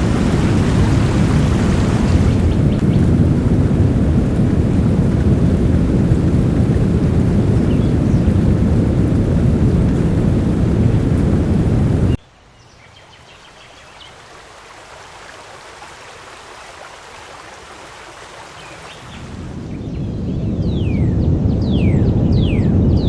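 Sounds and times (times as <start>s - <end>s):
heavy rain: 0.0s - 12.2s
thunder rumble: 0.0s - 12.2s.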